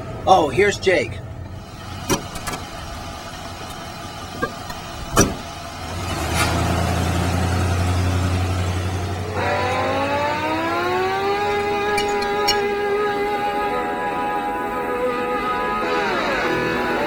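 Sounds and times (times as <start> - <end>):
steady low hum: 0.0 - 6.0
car knocks: 2.0 - 2.6, 4.4 - 5.5
music with gliding rising tones: 9.2 - 17.0.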